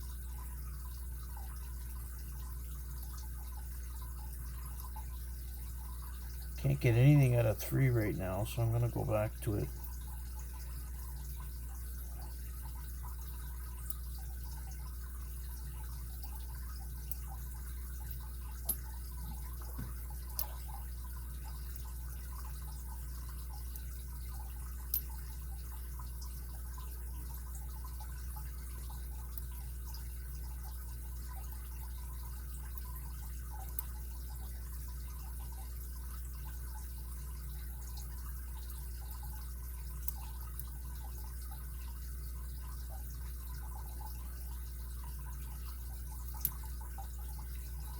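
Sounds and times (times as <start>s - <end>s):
steady low hum: 0.0s - 28.5s.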